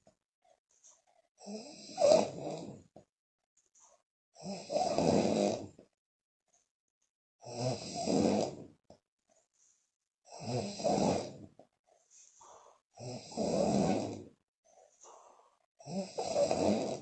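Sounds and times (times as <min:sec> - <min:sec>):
woman snoring loudly: 0:01.4 - 0:02.9, 0:04.4 - 0:05.8, 0:07.4 - 0:08.7, 0:10.3 - 0:11.6, 0:13.0 - 0:14.4, 0:15.8 - 0:17.0.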